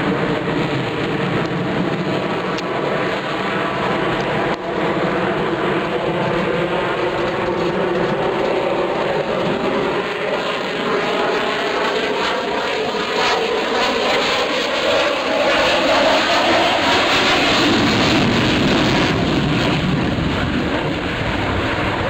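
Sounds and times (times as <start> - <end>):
loud jet engine noise: 0.0 - 22.0.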